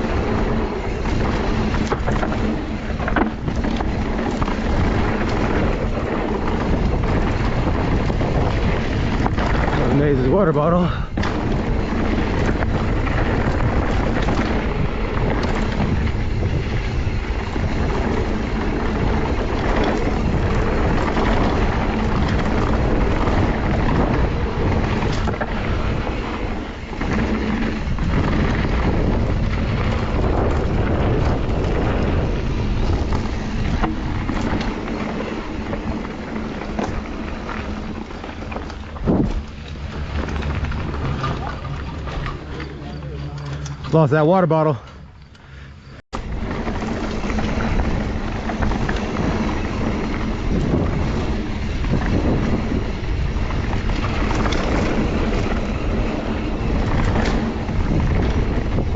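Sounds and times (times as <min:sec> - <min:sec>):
wind rushing: 0:00.0 - 0:42.4
bike knocking and rattling: 0:00.0 - 0:58.9
tyre noise on dirt: 0:00.0 - 0:58.9.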